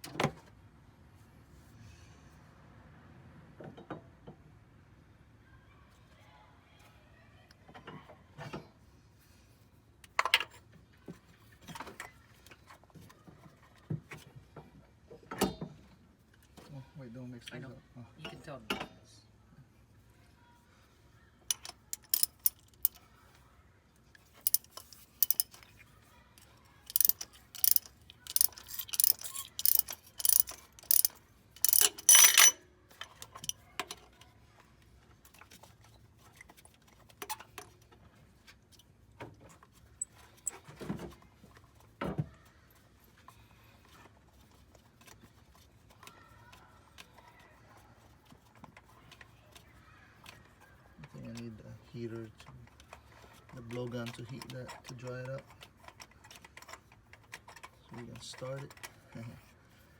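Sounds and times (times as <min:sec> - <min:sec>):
metal tools clinking and rattling: 0:21.5 - 0:23.0, 0:24.3 - 0:25.8, 0:26.8 - 0:34.1.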